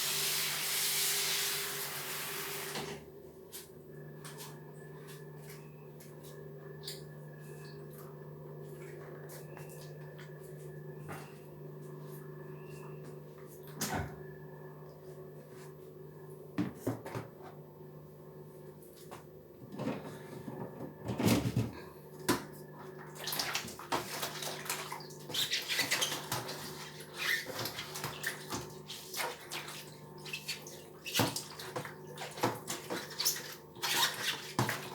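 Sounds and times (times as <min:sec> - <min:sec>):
steady low hum: 0:03.0 - 0:23.2
wet scrubbing and washing: 0:22.7 - 0:34.9.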